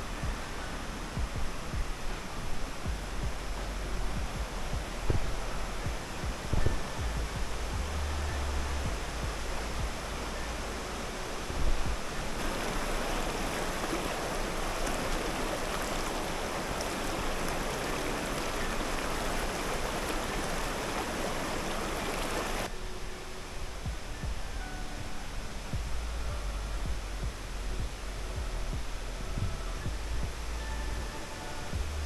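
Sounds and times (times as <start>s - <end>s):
low bumps: 0.0s - 22.7s
waterfall rushing: 0.0s - 24.0s.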